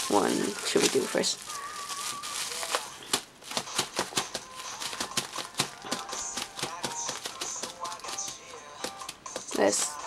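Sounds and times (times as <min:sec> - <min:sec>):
faint music: 0:00.0 - 0:10.0
cd cases clicking and tapping: 0:02.6 - 0:10.0.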